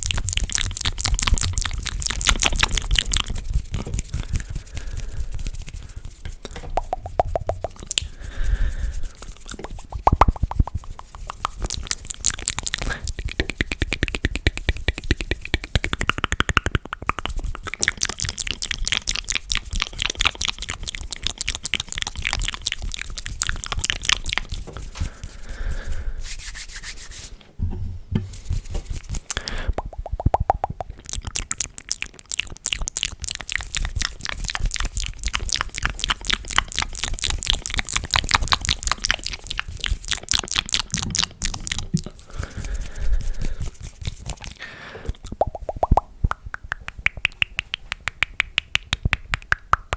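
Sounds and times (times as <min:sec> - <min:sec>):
wet mouth clicks and smacks: 0:00.0 - 0:26.0, 0:28.4 - 0:49.9.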